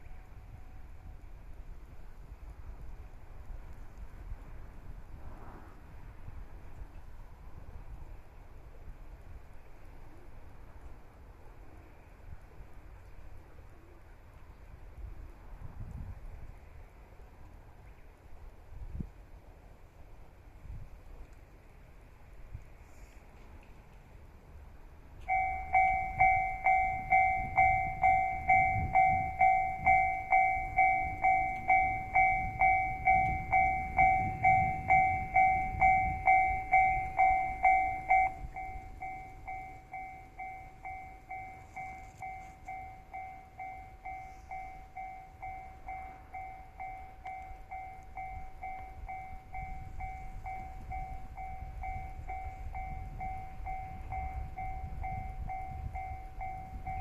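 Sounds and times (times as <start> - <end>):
level-crossing warning bell: 25.2 - 57.0.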